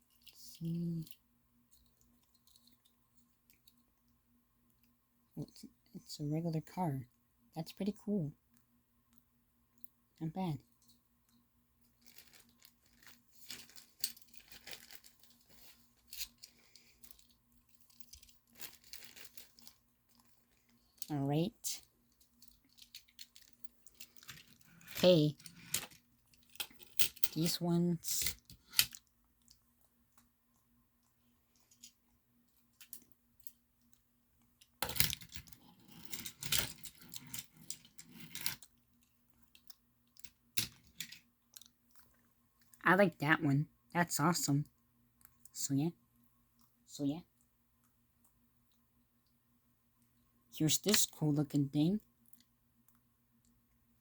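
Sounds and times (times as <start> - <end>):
plastic packaging crinkling: 11.9 - 21.1, 22.1 - 27.2
toy cars clinking and rattling: 22.2 - 29.0, 34.8 - 38.7.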